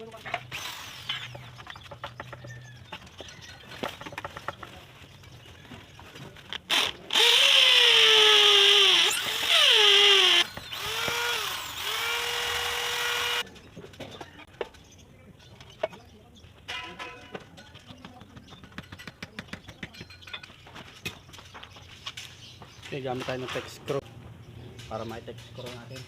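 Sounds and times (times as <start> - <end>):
electric drill boring: 6.7 - 13.4.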